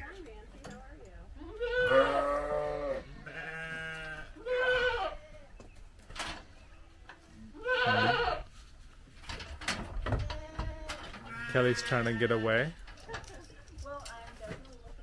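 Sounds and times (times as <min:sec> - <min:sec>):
sheep bleating: 0:01.5 - 0:05.3, 0:07.6 - 0:08.5, 0:10.4 - 0:12.7.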